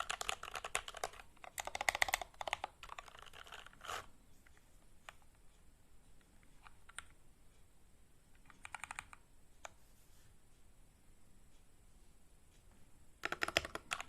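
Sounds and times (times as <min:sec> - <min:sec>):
mechanical keyboard keystrokes: 0:00.0 - 0:03.8, 0:08.4 - 0:09.2, 0:13.2 - 0:14.0.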